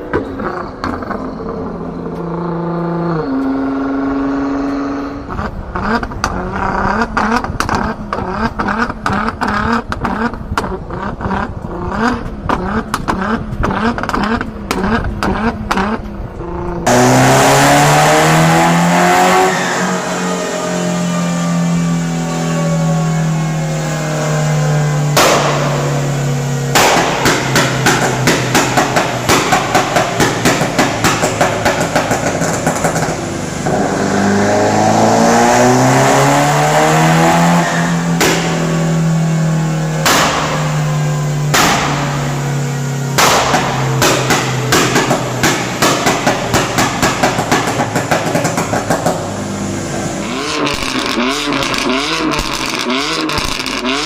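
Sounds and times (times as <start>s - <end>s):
exhaust pops and crackles: 0.0s - 2.4s, 5.3s - 16.2s, 25.1s - 34.1s, 38.1s - 39.2s, 39.9s - 49.5s, 50.2s - 54.0s
car engine revving: 0.0s - 54.0s.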